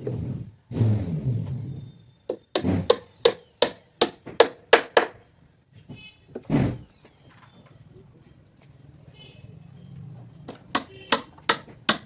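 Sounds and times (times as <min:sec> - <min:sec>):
hammer striking wood: 0:02.3 - 0:05.2, 0:10.5 - 0:12.0.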